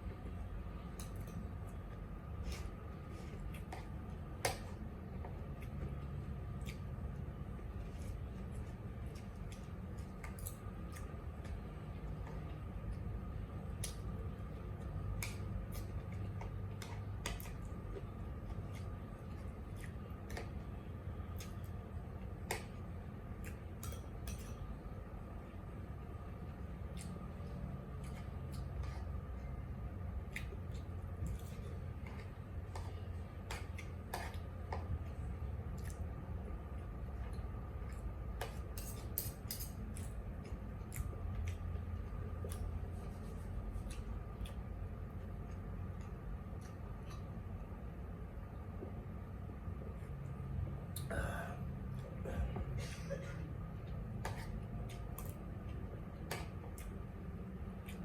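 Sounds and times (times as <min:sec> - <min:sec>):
steady low hum: 0:00.0 - 0:58.0
cutlery clicking on plate: 0:23.8 - 0:24.7, 0:38.7 - 0:40.1
cutlery clinking on a plate: 0:23.8 - 0:24.7.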